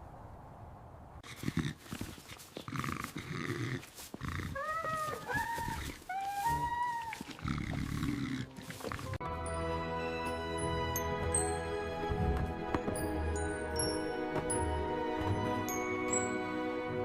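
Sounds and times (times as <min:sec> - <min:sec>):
animal grunting: 0:01.2 - 0:09.2.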